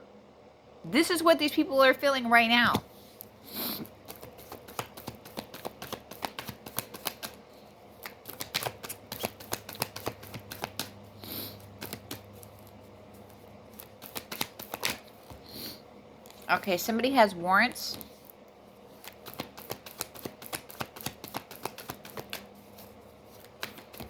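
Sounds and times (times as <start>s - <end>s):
cards being shuffled: 3.7s - 15.4s, 17.8s - 24.0s.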